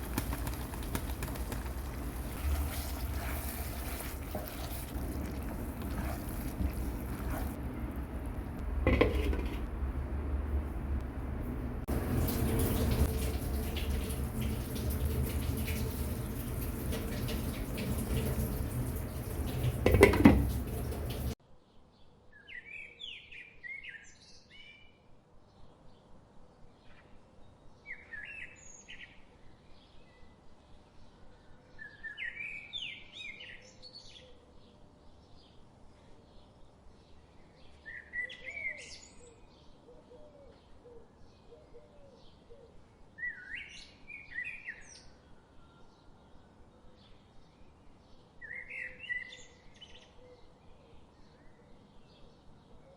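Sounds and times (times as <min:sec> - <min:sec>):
water running from tap into sink: 0:00.0 - 0:07.6, 0:11.9 - 0:21.4.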